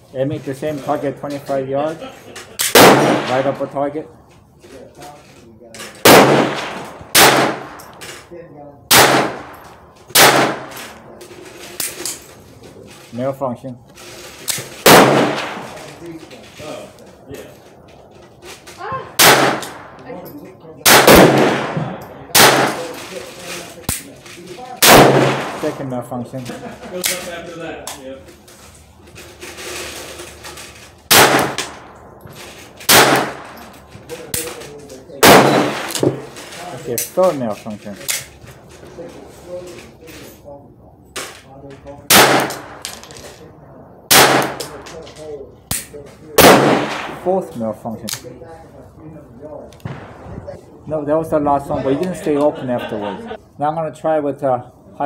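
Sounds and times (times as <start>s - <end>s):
pistol shots with ringing echo: 2.6s - 3.7s, 6.0s - 8.0s, 8.9s - 11.0s, 14.8s - 15.8s, 19.2s - 20.0s, 20.8s - 23.0s, 24.8s - 25.8s, 31.1s - 32.1s, 32.8s - 33.6s, 35.2s - 36.3s, 42.1s - 42.8s, 44.1s - 44.8s, 45.7s - 47.3s.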